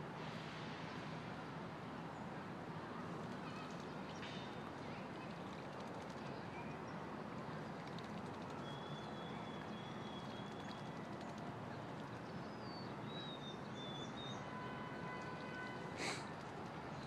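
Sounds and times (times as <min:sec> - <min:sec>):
birds splashing in water: 0:07.5 - 0:12.3.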